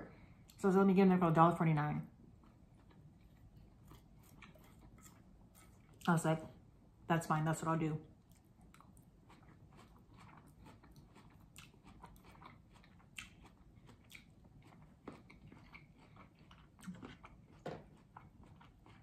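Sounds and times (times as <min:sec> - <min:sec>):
person chewing: 0:02.3 - 0:06.1, 0:08.2 - 0:19.0.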